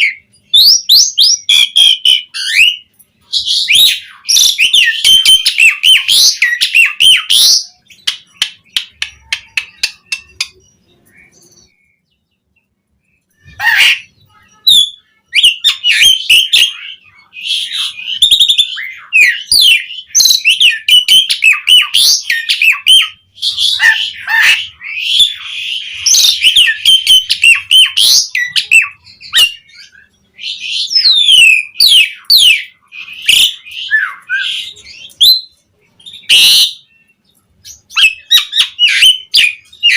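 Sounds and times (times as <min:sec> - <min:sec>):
starling singing varied song: 0:00.0 - 0:12.6, 0:13.3 - 0:39.9.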